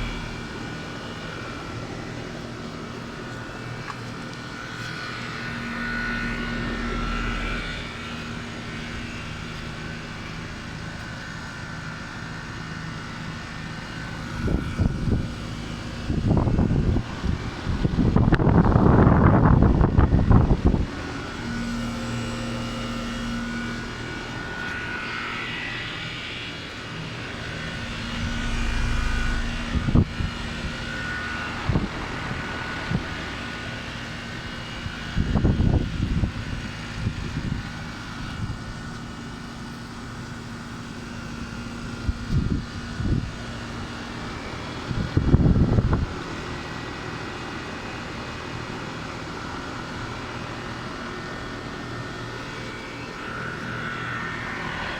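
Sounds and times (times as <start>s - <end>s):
air conditioner drone: 0.0s - 54.9s
short low rumbles: 27.4s - 31.0s.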